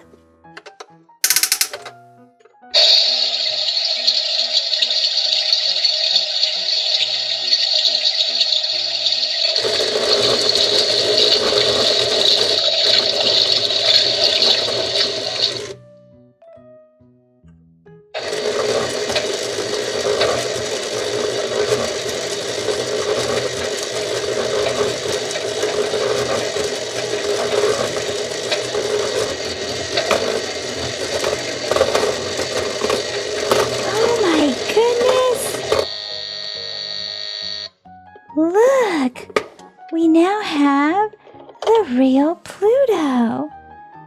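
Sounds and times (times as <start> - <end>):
toy washing machine whirring: 1.2 - 1.9, 2.8 - 15.8, 18.2 - 37.7.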